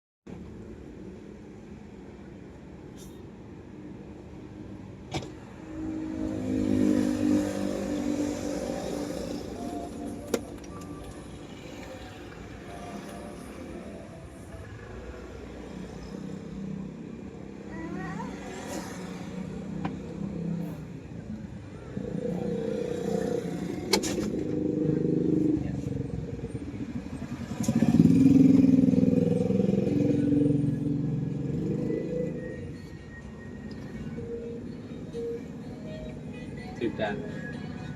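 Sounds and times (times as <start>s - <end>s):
background traffic rumble: 0.3s - 37.9s
vehicle engine passing: 5.7s - 10.2s, 18.1s - 35.7s
vehicle passing close by: 5.8s - 9.6s.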